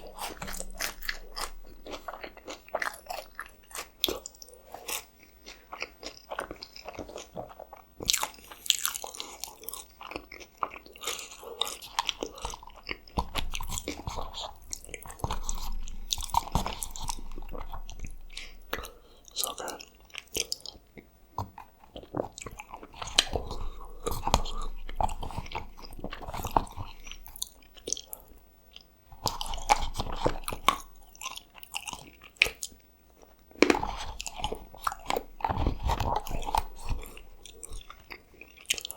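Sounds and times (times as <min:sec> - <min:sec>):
chewing with crunches: 0:00.0 - 0:38.9.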